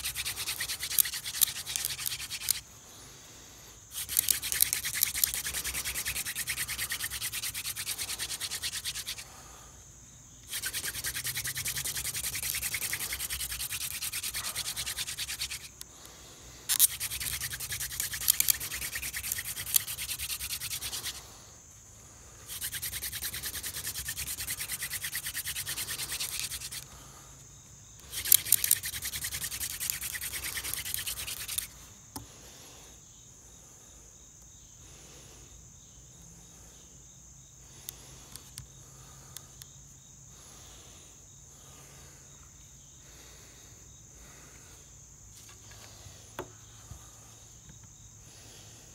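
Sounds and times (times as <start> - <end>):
wood-on-wood rubbing hiss: 0.0 - 9.7, 10.4 - 21.5, 22.2 - 27.2, 28.0 - 32.4, 44.2 - 48.7
faint insect chirping: 0.0 - 48.9.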